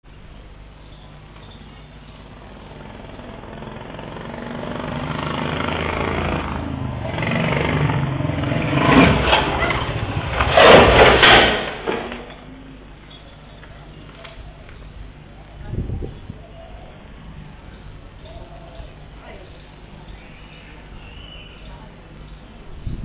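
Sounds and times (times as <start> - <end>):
motorcycle engine: 1.4 - 12.7.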